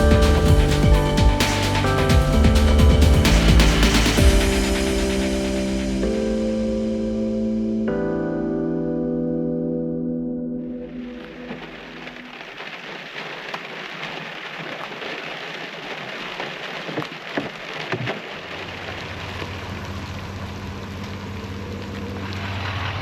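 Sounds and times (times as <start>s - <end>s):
low steady hum: 0.0s - 8.5s, 18.5s - 23.0s
steady rain falling: 10.9s - 23.0s
raindrops striking a surface: 11.0s - 23.0s.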